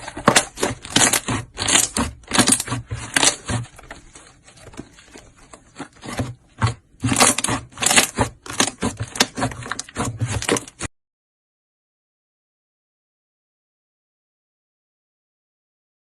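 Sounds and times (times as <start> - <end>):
slime squishing crackling: 0.0 - 10.9.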